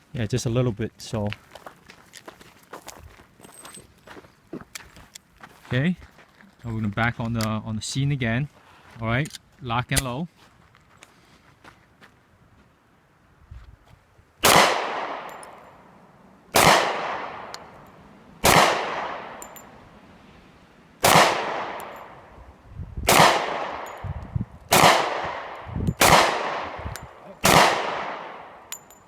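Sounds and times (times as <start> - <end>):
pistol shots with ringing echo: 14.4 - 15.9, 16.5 - 20.0, 21.0 - 22.4, 23.0 - 29.0.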